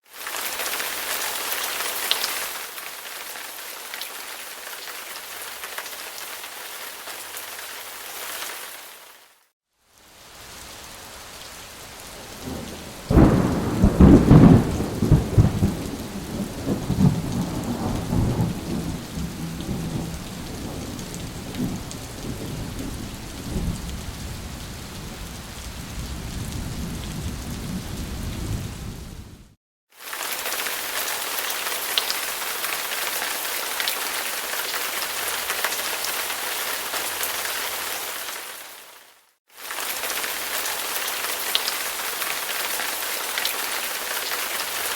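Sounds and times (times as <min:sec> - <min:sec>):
steady rain: 0:00.0 - 0:44.9
thunderclap rumbling: 0:12.2 - 0:25.1, 0:25.9 - 0:29.5.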